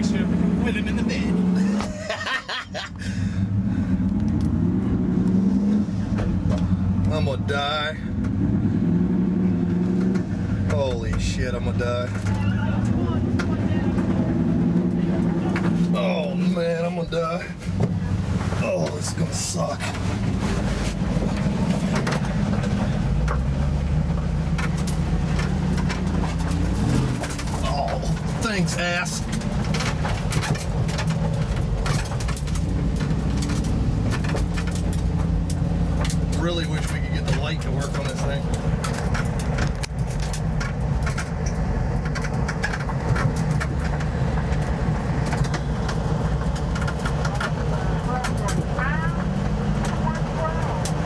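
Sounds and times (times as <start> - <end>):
engine running at low revs: 0.0 - 51.0
rattles and knocks: 1.1 - 2.9, 16.7 - 51.0.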